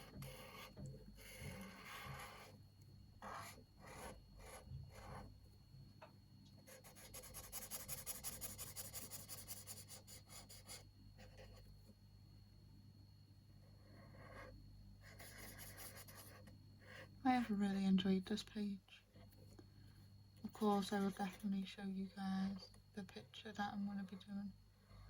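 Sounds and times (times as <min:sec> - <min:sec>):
marker scribbling on paper: 0:00.0 - 0:02.5, 0:03.2 - 0:05.2, 0:06.7 - 0:11.5, 0:15.1 - 0:16.4.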